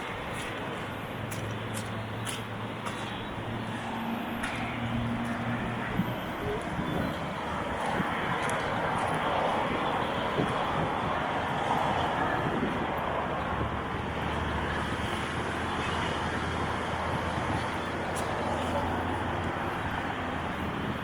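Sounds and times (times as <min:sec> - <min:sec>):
low engine hum: 0:00.0 - 0:21.0
outdoor background noise: 0:00.0 - 0:21.0.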